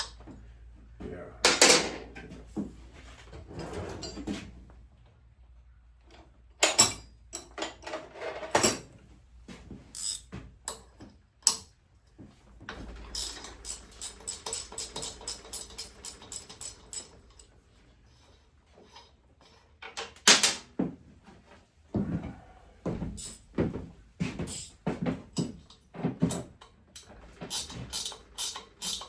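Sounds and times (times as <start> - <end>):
metal tools clanking: 10.0 - 10.8, 12.7 - 17.5, 23.2 - 23.4, 24.4 - 29.0
ratchet wrench clicking: 10.0 - 10.8, 13.1 - 17.2, 24.5 - 24.7, 27.0 - 29.0.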